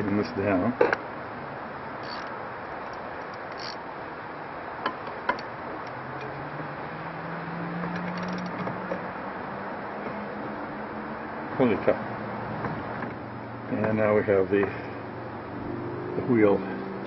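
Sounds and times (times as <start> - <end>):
wrench tightening nut: 2.0 - 3.8, 8.0 - 8.6.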